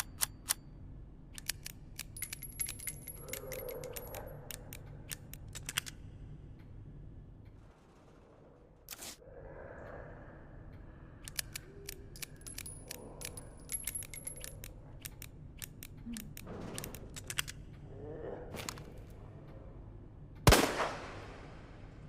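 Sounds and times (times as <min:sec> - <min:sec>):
revolver metallic clicks: 0:01.3 - 0:06.7, 0:11.2 - 0:17.8.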